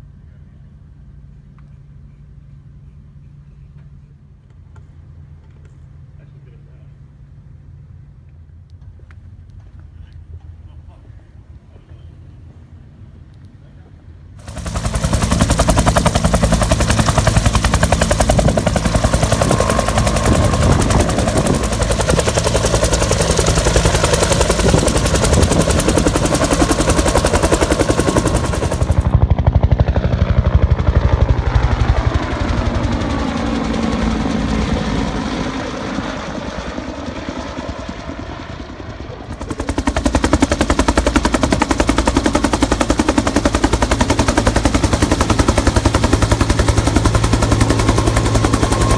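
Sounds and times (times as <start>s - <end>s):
helicopter rotor blade slap: 14.4s - 35.6s, 38.8s - 48.9s.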